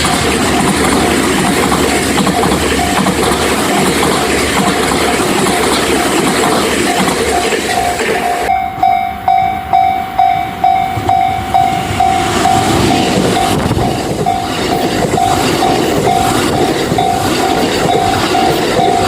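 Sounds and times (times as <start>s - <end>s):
level-crossing bell clanging: 0.0s - 19.0s
train rumbling on rails: 0.0s - 19.0s.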